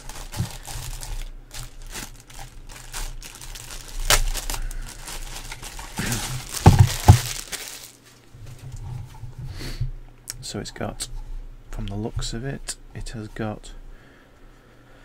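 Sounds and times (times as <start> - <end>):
packaging crinkling and rustling: 0.0 - 8.3
heavy knocks: 6.5 - 7.4.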